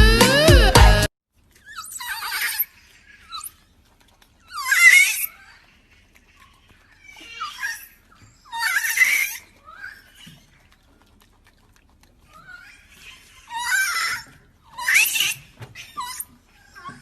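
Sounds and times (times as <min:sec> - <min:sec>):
animal high harsh calls: 0:01.6 - 0:03.7, 0:04.4 - 0:10.7, 0:12.3 - 0:17.0.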